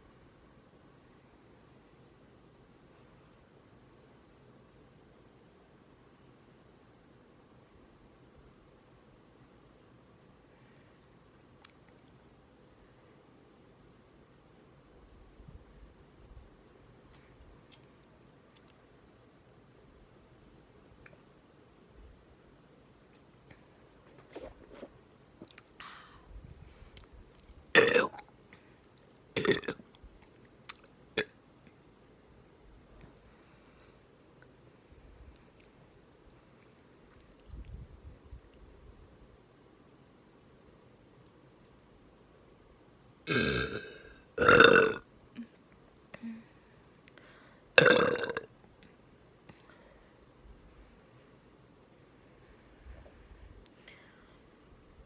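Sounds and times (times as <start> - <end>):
breath: 10.5 - 11.1, 25.8 - 27.0, 28.5 - 28.9, 33.2 - 34.1, 46.2 - 47.8, 49.5 - 51.3, 52.2 - 54.5
person burping: 27.8 - 28.2, 29.4 - 29.8, 43.3 - 45.0, 47.8 - 48.5
woman belching: 27.8 - 28.2, 29.4 - 29.8, 43.3 - 45.0, 47.8 - 48.5.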